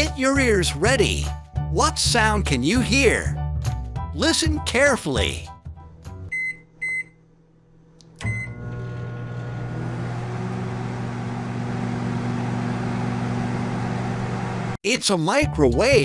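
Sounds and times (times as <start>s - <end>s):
microwave keypad beep: 6.3s - 7.2s, 8.2s - 8.6s
microwave click: 8.0s - 9.8s
microwave oven humming: 8.0s - 14.8s.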